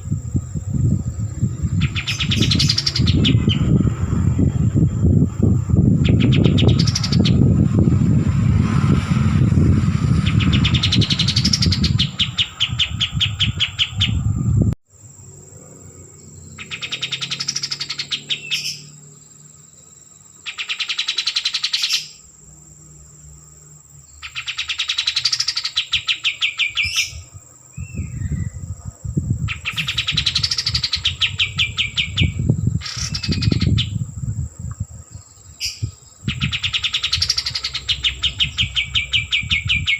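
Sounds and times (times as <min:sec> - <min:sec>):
bird singing fast notes: 0:00.0 - 0:08.2, 0:10.0 - 0:14.6, 0:16.2 - 0:19.0, 0:20.3 - 0:22.3, 0:24.0 - 0:28.6, 0:29.4 - 0:34.2, 0:35.1 - 0:39.9
low rumble: 0:00.0 - 0:16.5
high-pitched whine: 0:00.0 - 0:20.4.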